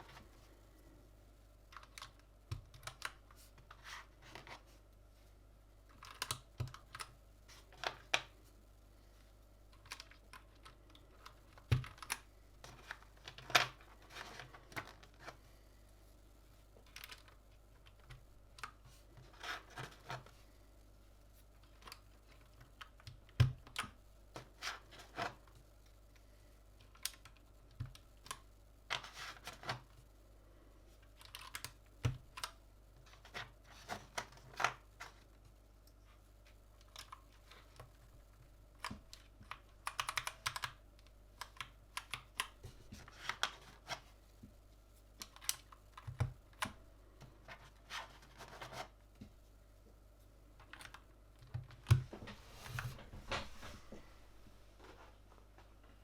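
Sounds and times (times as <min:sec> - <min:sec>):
mechanical keyboard clicking: 0:09.8 - 0:12.2, 0:31.2 - 0:32.5, 0:38.8 - 0:42.6.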